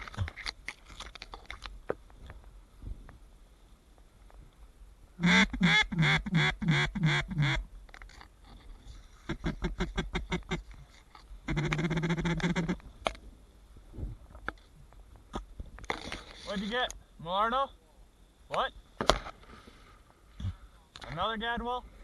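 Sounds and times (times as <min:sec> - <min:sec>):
duck call quacks: 0:05.2 - 0:07.6, 0:09.3 - 0:10.7, 0:11.5 - 0:12.8.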